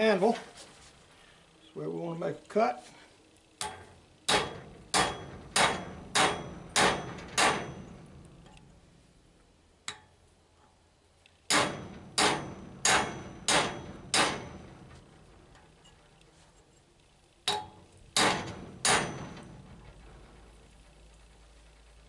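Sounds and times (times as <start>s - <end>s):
hammer blows on metal cutter: 3.6s - 8.2s, 11.5s - 15.1s.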